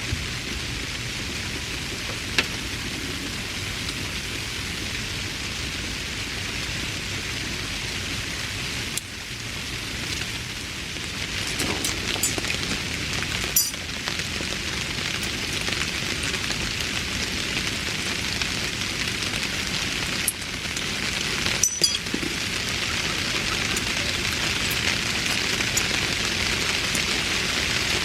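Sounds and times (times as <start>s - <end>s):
steady hiss: 0.0s - 28.0s.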